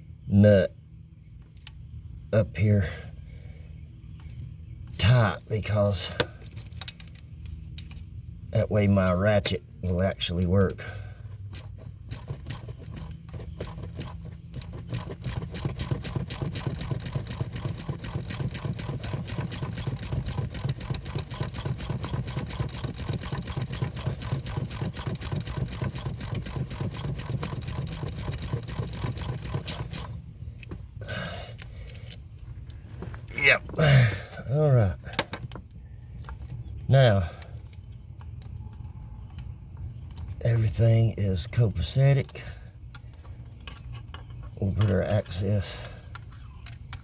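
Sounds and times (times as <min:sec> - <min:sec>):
ratchet wrench clicking: 0:11.5 - 0:30.2.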